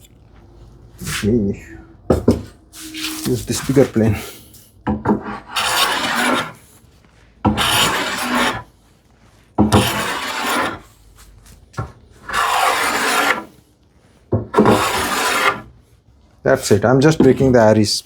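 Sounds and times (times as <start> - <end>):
hand plane shaving wood: 5.2 - 6.6, 7.5 - 8.7, 9.6 - 10.9, 12.2 - 13.6, 14.6 - 15.7.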